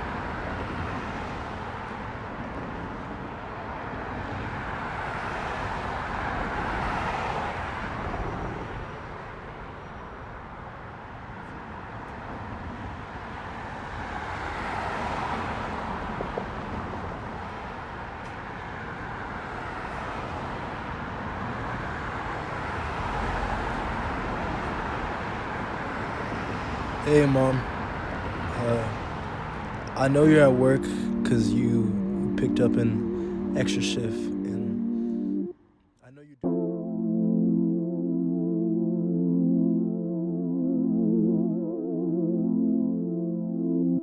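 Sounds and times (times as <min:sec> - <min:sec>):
passing cars rushing: 0:00.0 - 0:09.7, 0:11.1 - 0:35.6.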